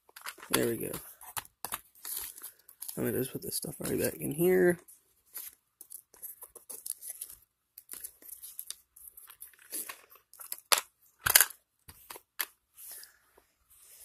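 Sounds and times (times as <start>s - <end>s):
cardboard packaging rustling: 0.0s - 10.7s.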